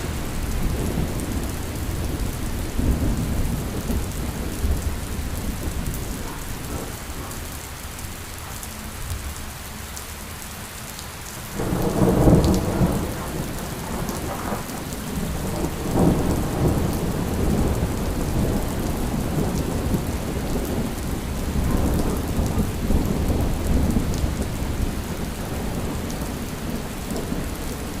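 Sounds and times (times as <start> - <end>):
steady rain: 0.0 - 28.0
thunder rolling: 11.6 - 26.4.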